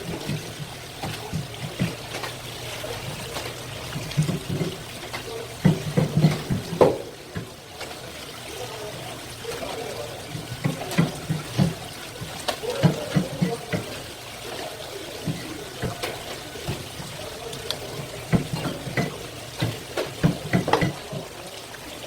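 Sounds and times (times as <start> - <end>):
water trickling: 0.0 - 22.0
knocks and clatter: 3.3 - 7.5, 18.0 - 21.3.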